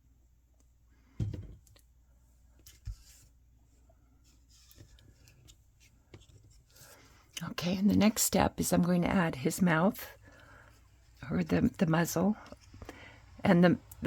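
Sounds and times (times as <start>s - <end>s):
soft thump: 1.2s - 1.6s.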